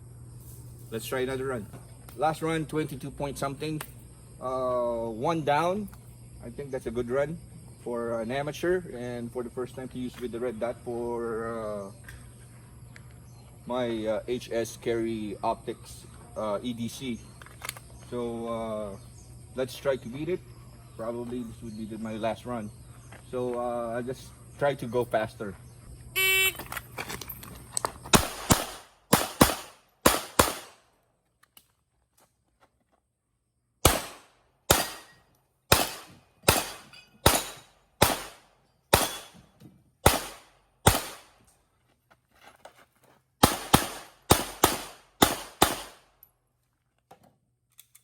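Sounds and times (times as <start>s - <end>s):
pistol shots: 28.1s - 30.8s, 33.8s - 39.4s, 40.0s - 41.4s, 43.4s - 46.1s.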